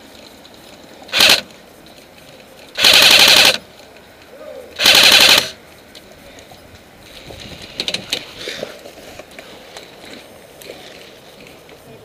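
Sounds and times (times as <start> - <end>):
airsoft rifle full-auto burst: 1.1 - 1.5, 2.8 - 3.6, 4.8 - 5.6.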